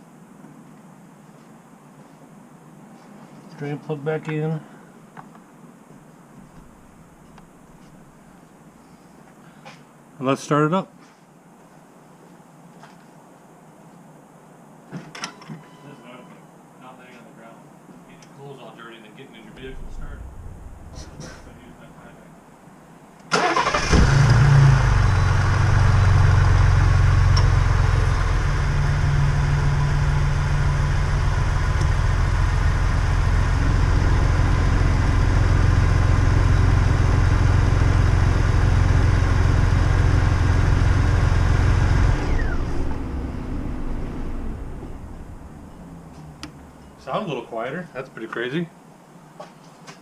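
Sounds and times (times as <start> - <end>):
engine idling: 19.5 - 22.6, 23.4 - 46.8
engine running down with whine: 19.5 - 22.6, 23.6 - 46.9
engine cranking and starting: 23.3 - 25.8.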